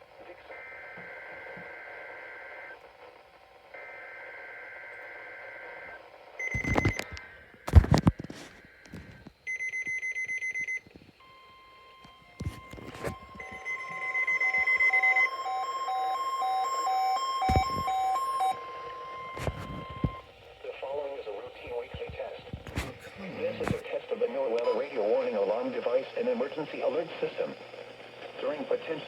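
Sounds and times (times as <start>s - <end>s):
rapid electronic beeps: 12.6s - 20.2s.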